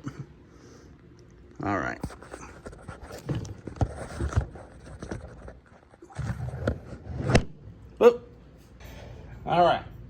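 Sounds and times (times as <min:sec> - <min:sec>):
scraping and rustling: 0:02.0 - 0:07.5.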